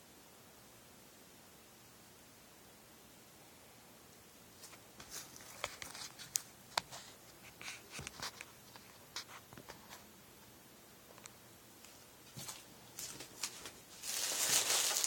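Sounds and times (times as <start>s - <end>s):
packaging rustling: 12.5s - 15.0s.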